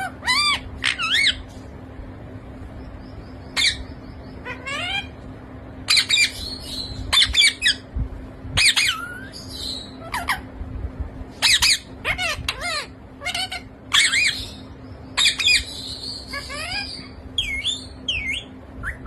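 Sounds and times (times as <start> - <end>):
parrot squawking: 0.0 - 1.5, 3.5 - 5.2, 5.8 - 7.8, 8.6 - 10.5, 11.4 - 19.0.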